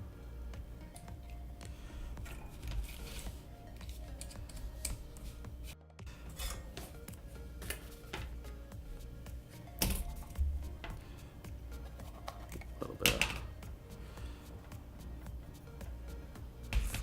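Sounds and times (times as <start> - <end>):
quiet background music: 0.0 - 17.0
small tools clicking and tapping: 2.2 - 5.2.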